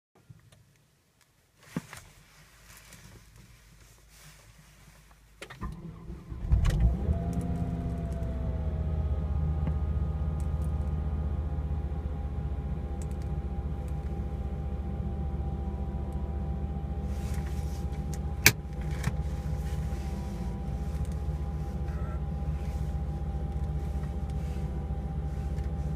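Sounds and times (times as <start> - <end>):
car engine starting and idling: 5.4 - 25.9
steady whine: 6.6 - 25.9.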